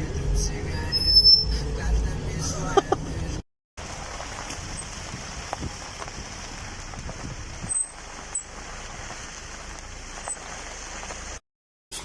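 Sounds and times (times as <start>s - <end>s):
short high squeaks: 0.9s - 1.6s
steady rain hiss: 3.8s - 11.4s.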